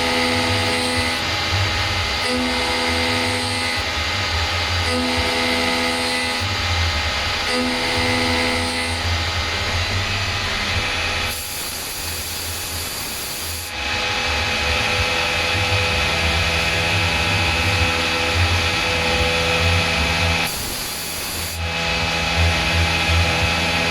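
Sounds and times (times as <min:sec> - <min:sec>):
motor whine: 0:00.0 - 0:23.9
low hum: 0:06.5 - 0:23.9.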